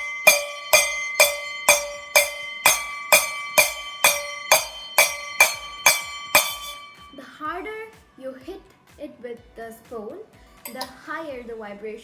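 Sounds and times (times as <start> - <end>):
spoon striking a ringing bowl: 0.0 - 7.7, 10.7 - 11.0.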